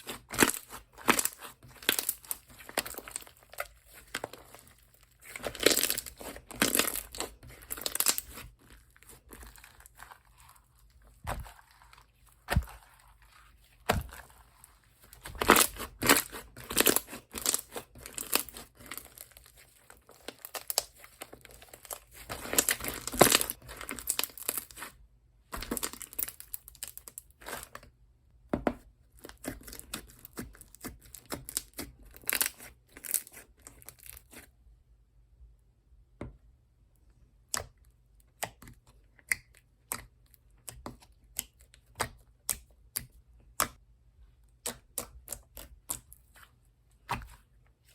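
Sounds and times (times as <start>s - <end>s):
slime squishing and crackling: 0.0s - 27.8s, 29.2s - 34.5s, 44.5s - 47.9s.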